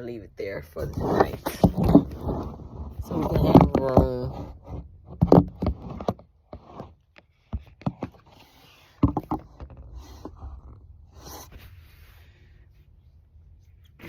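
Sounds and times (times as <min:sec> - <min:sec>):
objects knocking and clattering: 0:00.9 - 0:06.2, 0:09.0 - 0:09.8.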